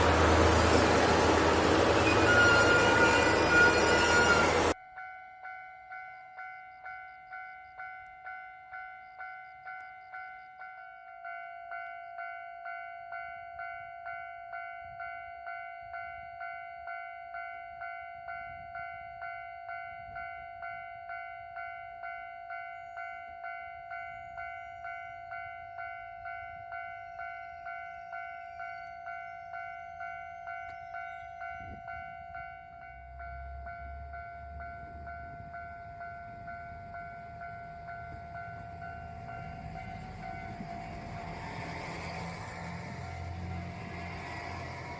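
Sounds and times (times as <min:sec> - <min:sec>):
train rumbling: 0:00.0 - 0:04.8, 0:23.9 - 0:44.9
level crossing warning bell: 0:00.0 - 0:44.9.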